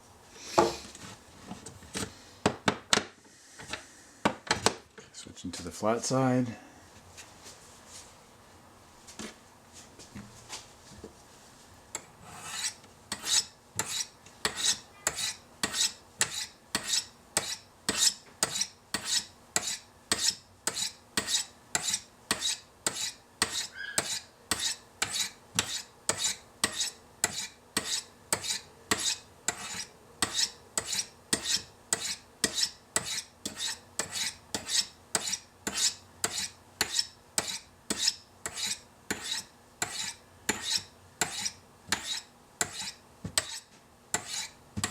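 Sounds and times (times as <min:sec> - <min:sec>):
knife blade scraping ceramic rods: 0:12.0 - 0:44.9.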